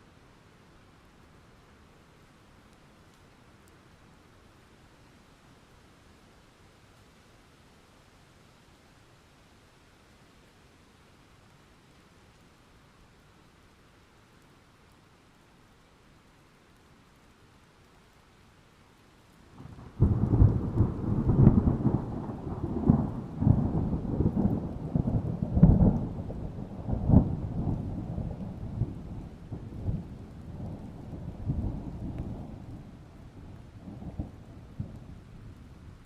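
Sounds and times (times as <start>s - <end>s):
steady rain: 0.0s - 36.0s
thunder crack and rumble: 19.6s - 35.7s.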